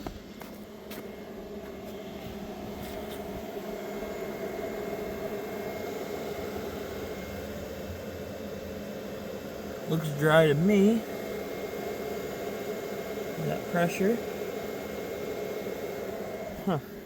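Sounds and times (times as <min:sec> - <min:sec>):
heater blower fan running: 0:00.0 - 0:17.0.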